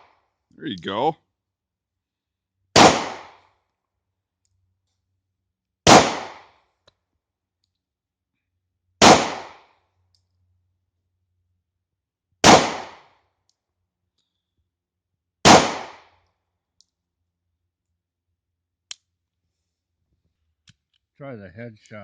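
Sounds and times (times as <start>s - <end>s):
pistol shots with echo: 2.8s - 3.4s, 5.8s - 6.5s, 9.0s - 9.6s, 12.4s - 13.1s, 15.4s - 16.1s.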